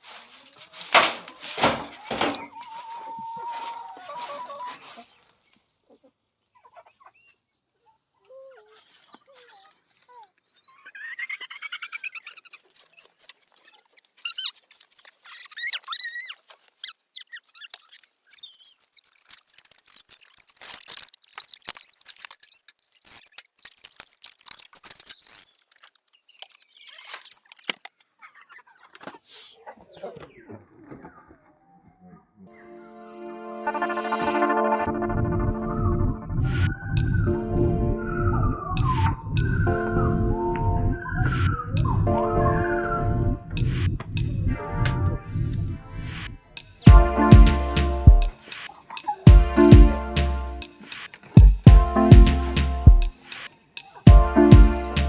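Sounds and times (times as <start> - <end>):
chickens calling: 1.1 - 9.4
clicks and scrapes: 12.3 - 28.1, 48.3 - 49.2.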